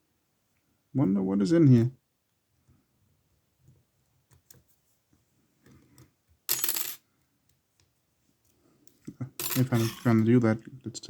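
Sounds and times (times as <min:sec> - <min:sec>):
metal lock-picking tools clattering: 0:09.4 - 0:10.1.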